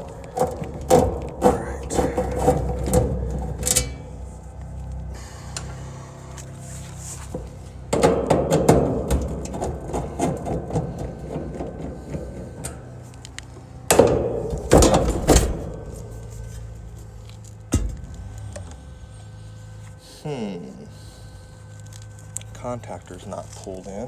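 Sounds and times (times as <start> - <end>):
sheet metal rattling and banging: 0.0 - 4.6, 7.3 - 18.5.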